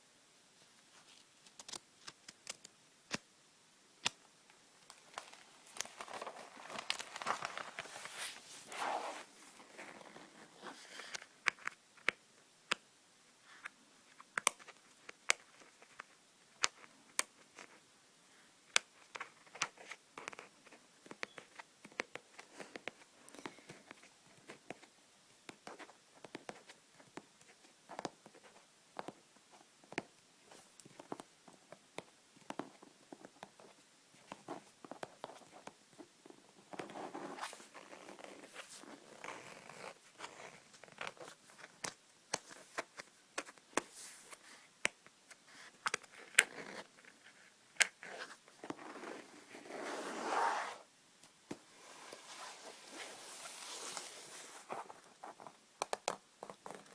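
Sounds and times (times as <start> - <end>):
scratchy rustling: 5.0 - 11.2, 45.5 - 50.8, 51.7 - 55.5.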